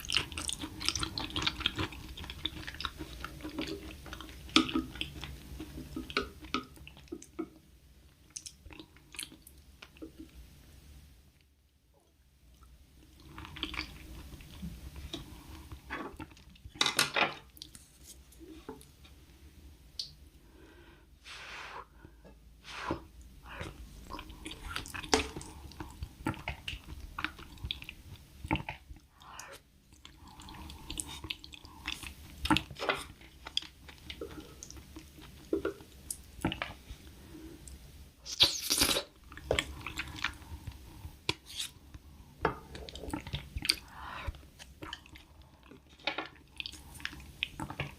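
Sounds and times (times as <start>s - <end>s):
person chewing with crunches: 0.0s - 6.9s, 23.4s - 36.9s, 37.7s - 47.9s.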